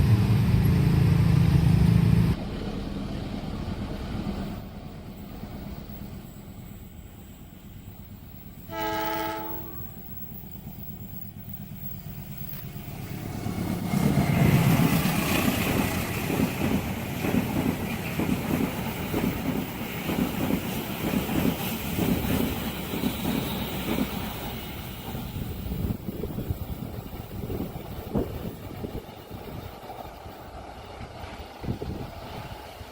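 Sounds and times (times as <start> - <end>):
train passing with rumble: 0.0 - 32.9
train horn blast: 8.6 - 10.1
train wheels clattering over rails: 9.9 - 32.9.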